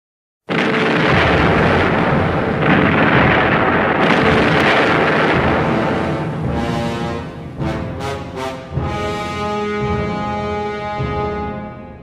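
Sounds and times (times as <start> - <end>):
loud rumbling blast: 0.5 - 9.9.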